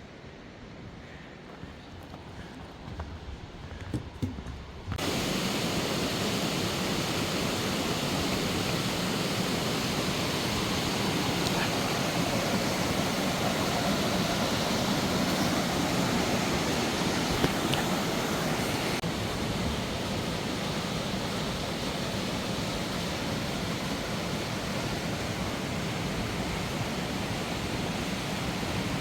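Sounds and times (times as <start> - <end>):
water rushing in rocky stream: 4.9 - 29.0.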